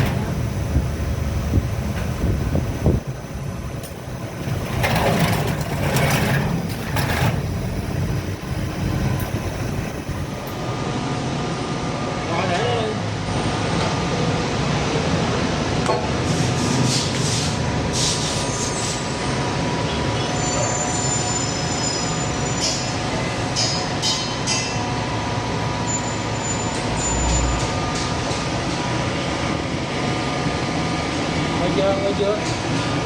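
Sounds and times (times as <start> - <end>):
mechanical running hum: 0.0 - 11.8
high-pitched squeals and scrapes: 4.4 - 10.6.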